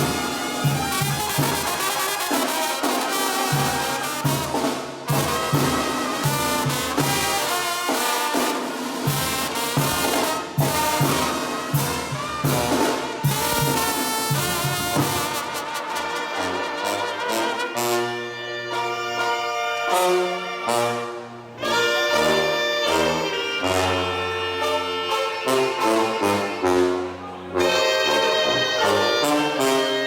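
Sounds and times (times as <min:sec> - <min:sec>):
drums: 0:00.0 - 0:16.2
brass band playing: 0:00.0 - 0:30.0.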